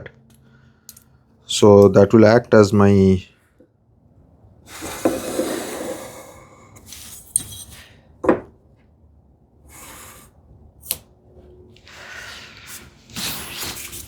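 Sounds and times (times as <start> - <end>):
tools scraping on workbench: 4.8 - 6.2.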